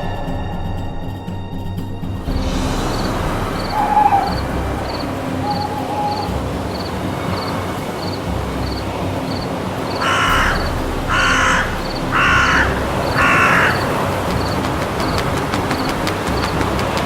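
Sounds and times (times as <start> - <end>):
low rumble: 0.0 - 17.0
crow cawing: 3.6 - 15.2.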